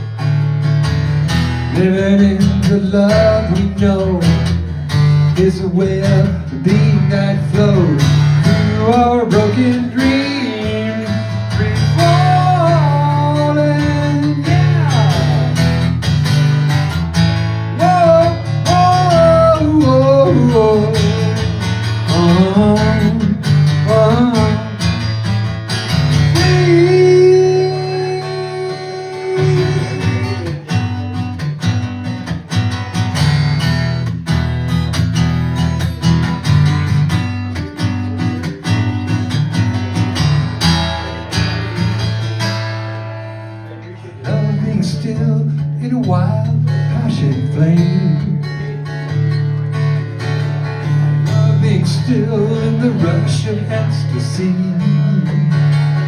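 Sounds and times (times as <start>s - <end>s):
acoustic guitar strumming: 0.0s - 56.0s.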